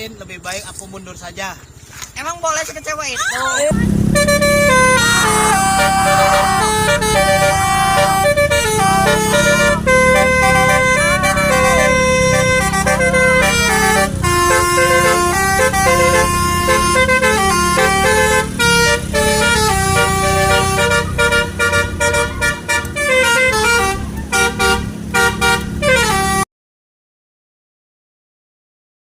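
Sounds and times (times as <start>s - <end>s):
multi-tone air horn playing tune: 3.8s - 26.4s.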